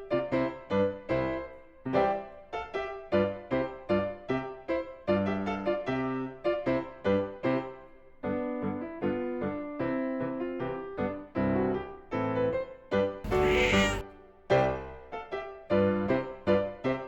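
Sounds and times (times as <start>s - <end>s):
bouncy keyboard music: 13.3s - 14.0s.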